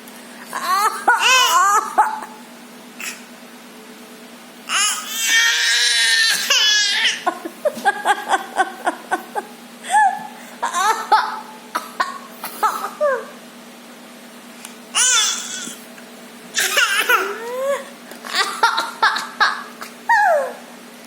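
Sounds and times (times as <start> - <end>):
child squealing: 0.5 - 2.3, 4.7 - 7.3, 15.0 - 15.8, 20.1 - 20.7
small child crying: 0.5 - 2.4, 4.7 - 7.3, 9.9 - 11.5, 15.0 - 15.8, 16.6 - 18.7, 20.1 - 20.7.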